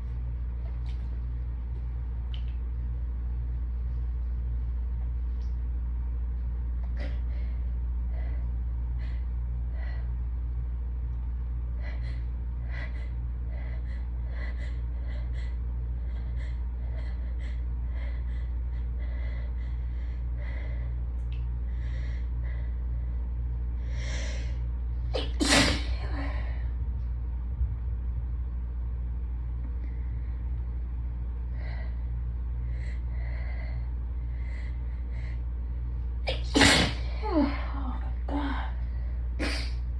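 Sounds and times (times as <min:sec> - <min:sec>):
air conditioner humming: 0:00.0 - 0:39.9
loud sneeze: 0:25.2 - 0:26.0, 0:36.3 - 0:37.2, 0:39.4 - 0:39.8.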